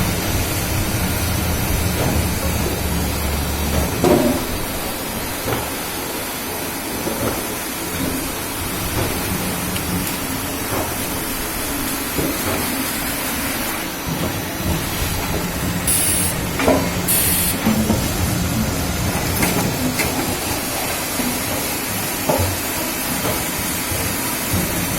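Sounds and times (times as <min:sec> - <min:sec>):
veneer peeling machine running: 0:00.0 - 0:23.1
short high hisses: 0:15.9 - 0:16.4, 0:17.1 - 0:17.6.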